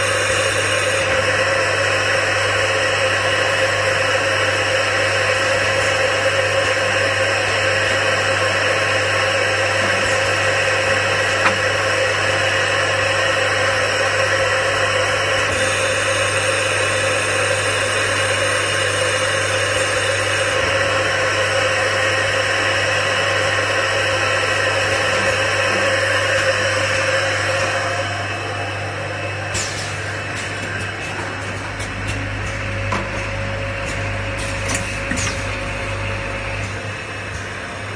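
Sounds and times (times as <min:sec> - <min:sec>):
motor hum: 0:05.8 - 0:37.9.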